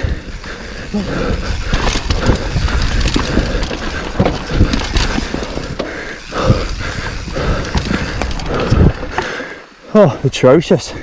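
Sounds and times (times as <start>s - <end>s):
bike knocks and rattles: 1.3s - 9.5s.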